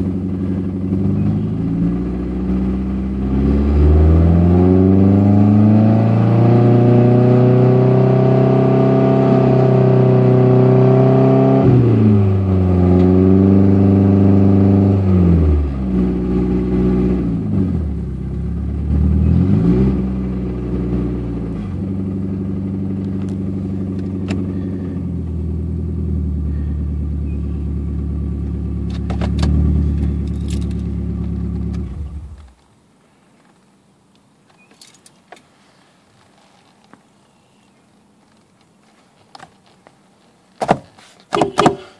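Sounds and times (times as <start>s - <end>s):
car engine revving and idling: 0.0s - 32.6s.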